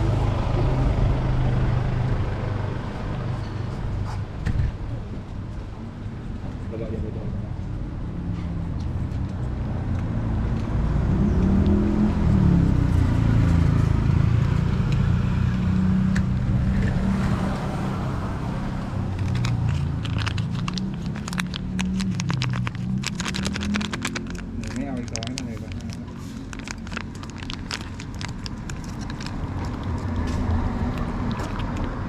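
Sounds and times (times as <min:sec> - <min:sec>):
vehicle engine humming: 0:00.0 - 0:32.0
sharp crackling clicks: 0:19.1 - 0:32.0.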